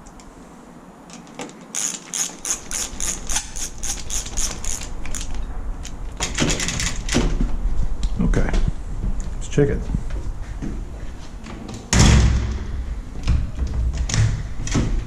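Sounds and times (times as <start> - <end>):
ratcheting hand tool clicking: 1.1 - 7.0.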